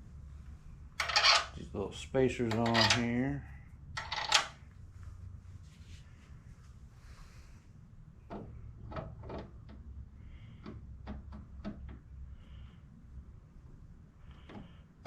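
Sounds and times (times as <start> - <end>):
bolts knocking against metal parts: 1.0 - 1.6, 2.4 - 3.2, 4.0 - 4.6
metal hardware clicking and clinking: 1.0 - 1.6, 2.4 - 3.2, 4.0 - 4.6.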